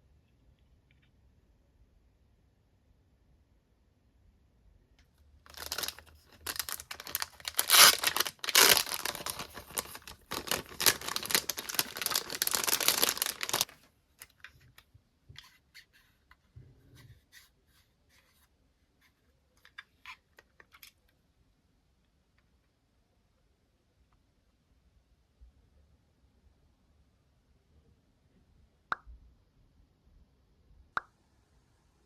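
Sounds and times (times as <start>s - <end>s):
packaging tearing and rustling: 5.5s - 13.8s.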